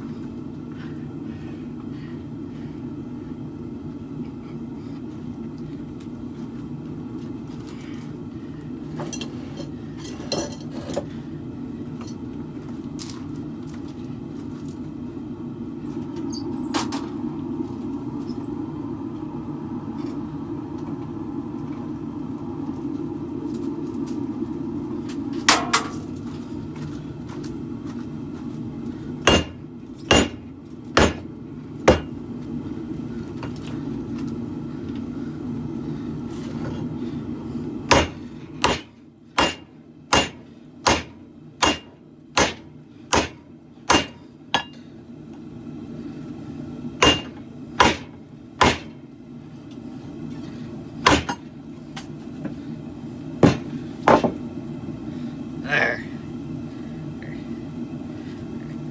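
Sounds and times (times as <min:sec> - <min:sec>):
low rumble: 0:14.9 - 0:28.2
hammer blows on metal: 0:29.2 - 0:30.4.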